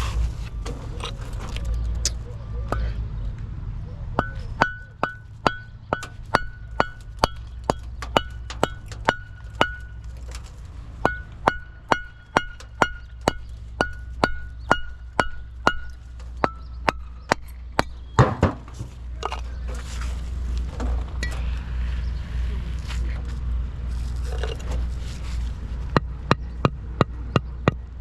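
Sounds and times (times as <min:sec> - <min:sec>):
steady low hum: 0:00.0 - 0:28.0
hammer striking metal: 0:04.2 - 0:10.0, 0:11.0 - 0:18.4.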